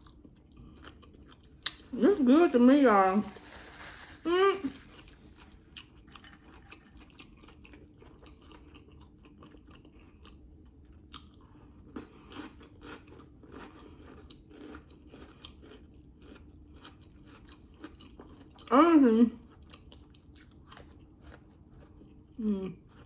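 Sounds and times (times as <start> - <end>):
person chewing wetly: 0.0 - 2.0, 5.0 - 18.7, 19.4 - 23.0.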